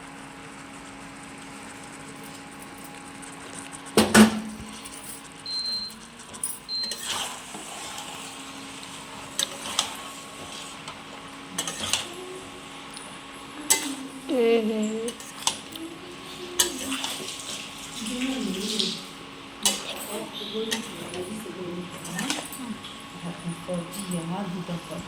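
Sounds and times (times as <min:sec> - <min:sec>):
short high beeps: 0:05.4 - 0:06.0, 0:06.6 - 0:07.1
metal utensils clattering: 0:11.6 - 0:12.1, 0:19.6 - 0:23.0.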